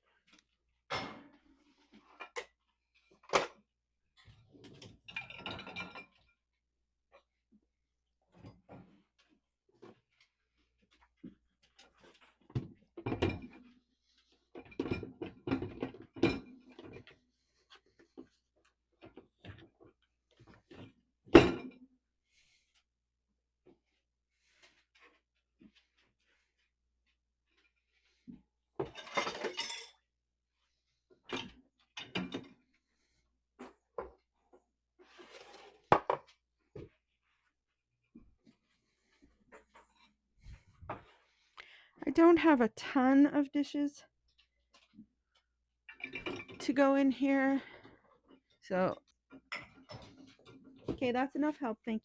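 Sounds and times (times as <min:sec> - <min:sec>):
dishes clinking in dishwasher racks: 0:05.1 - 0:06.2, 0:28.8 - 0:30.0, 0:45.9 - 0:46.6
dishes clinking and knocking: 0:05.1 - 0:06.4, 0:14.5 - 0:17.1, 0:21.3 - 0:21.9, 0:28.8 - 0:30.0, 0:45.9 - 0:46.6, 0:49.3 - 0:51.0.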